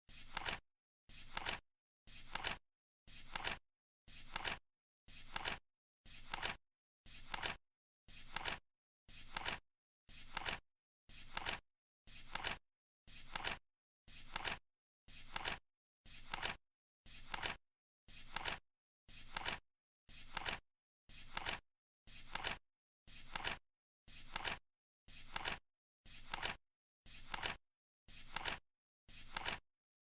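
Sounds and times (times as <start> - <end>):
flip clock card flapping: 0.2 - 0.6, 1.2 - 1.6, 2.2 - 2.6, 5.3 - 5.6, 6.2 - 6.6, 9.3 - 9.6, 10.3 - 10.6, 11.3 - 11.6, 12.3 - 12.6, 16.3 - 16.6, 19.3 - 19.6, 20.3 - 20.6, 21.3 - 21.6, 25.3 - 25.6, 26.2 - 26.6, 27.3 - 27.6, 28.3 - 28.6, 29.3 - 29.6.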